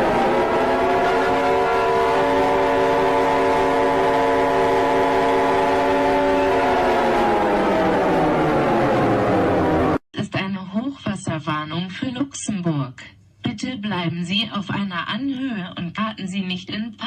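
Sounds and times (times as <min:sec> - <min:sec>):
emergency alert siren chord: 0:00.0 - 0:10.0.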